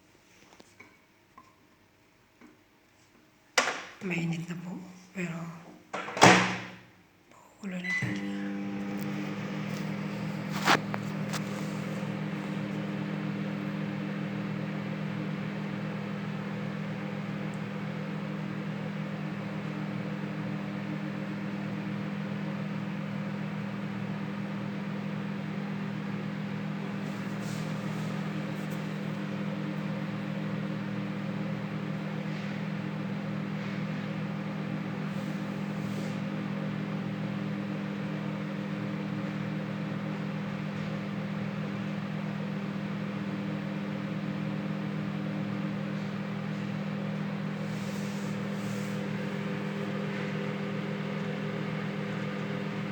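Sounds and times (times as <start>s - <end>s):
transformer mains hum: 3.6s - 38.4s
cooling fan whirring: 7.6s - 52.9s.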